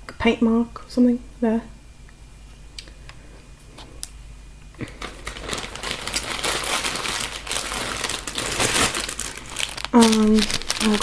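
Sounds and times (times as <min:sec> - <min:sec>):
plastic packaging crinkling: 0:04.8 - 0:11.0.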